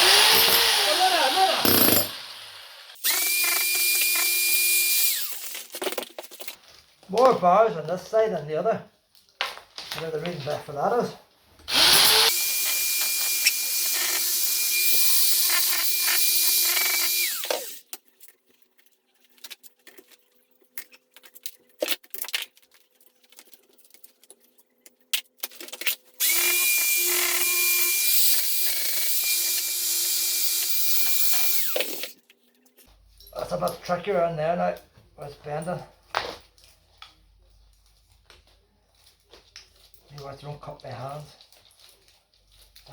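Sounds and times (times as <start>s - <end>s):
stone-cutting saw whining: 0.0s - 5.6s, 11.7s - 17.8s, 26.2s - 32.1s.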